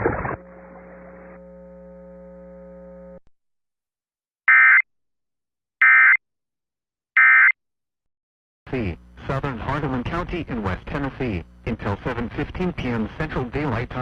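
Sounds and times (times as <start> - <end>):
faint radio hum: 8.7 - 14.0.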